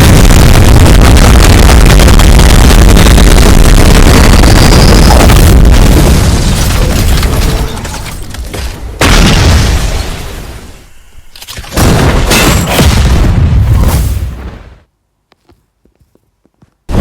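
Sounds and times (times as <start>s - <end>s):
explosion-like booms: 0.0s - 7.6s, 9.0s - 10.7s, 11.8s - 14.8s.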